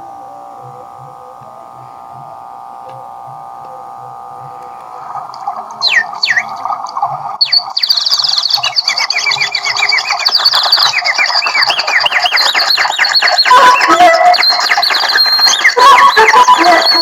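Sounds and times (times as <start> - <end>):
rough buzzing tone: 0.0 - 7.4
falling whistled chirps: 7.4 - 17.0.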